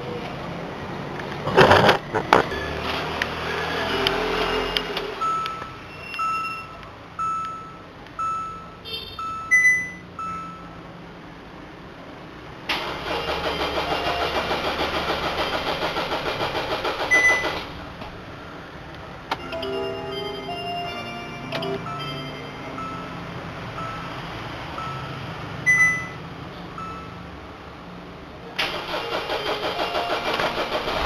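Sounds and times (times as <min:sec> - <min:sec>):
dashboard warning chime beeping: 0:02.5 - 0:10.8, 0:13.1 - 0:14.9, 0:19.4 - 0:26.2, 0:26.8 - 0:27.2
engine starter cranking: 0:12.7 - 0:17.8, 0:28.6 - 0:31.0.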